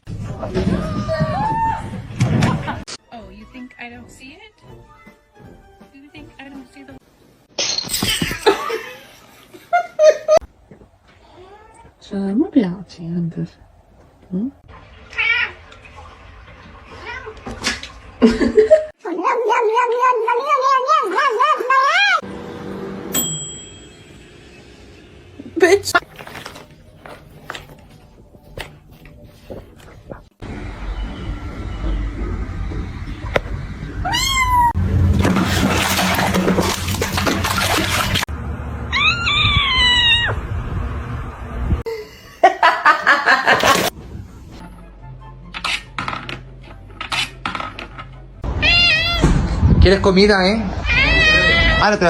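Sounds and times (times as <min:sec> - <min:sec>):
cat meowing: 0:34.0 - 0:34.8, 0:38.9 - 0:40.4, 0:48.5 - 0:49.4, 0:50.8 - 0:52.0
cat yowling: 0:34.0 - 0:34.8, 0:38.9 - 0:40.4, 0:48.5 - 0:49.4, 0:50.8 - 0:52.0.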